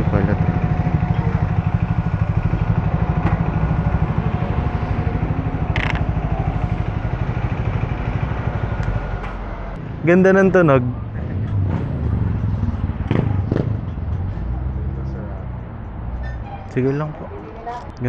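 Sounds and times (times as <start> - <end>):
motorcycle engine idling: 0.0 - 9.8.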